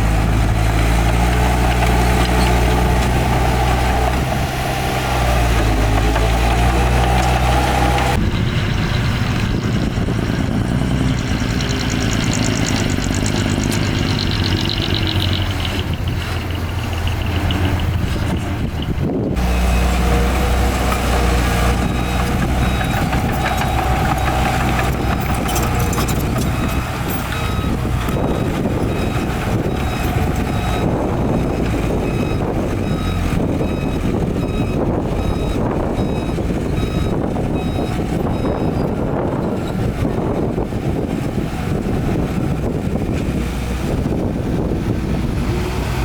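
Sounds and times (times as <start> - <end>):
heavy diesel machinery running: 0.0 - 46.0
reversing alarm beeping: 19.5 - 39.8.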